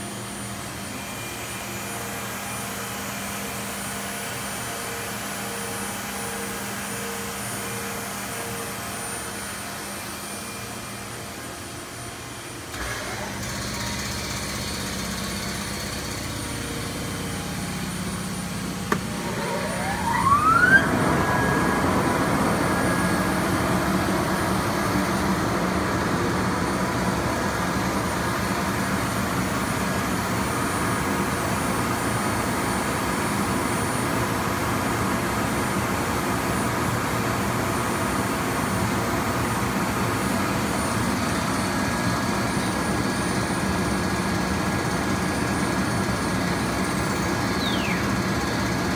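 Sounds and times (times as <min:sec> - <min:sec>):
router machine running: 0:00.0 - 0:48.9
spindle whine: 0:14.0 - 0:29.2.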